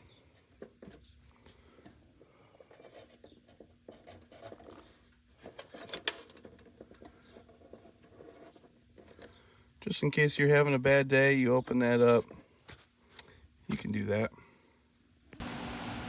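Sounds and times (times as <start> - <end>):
scratching and rubbing: 2.4 - 9.6.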